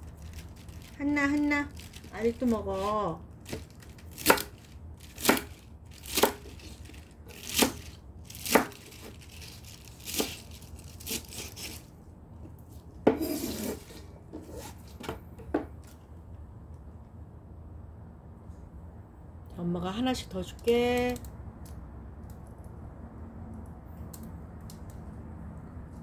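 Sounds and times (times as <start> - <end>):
dog chewing crunchy cabbage: 0.0 - 11.9
rustling: 0.0 - 15.0.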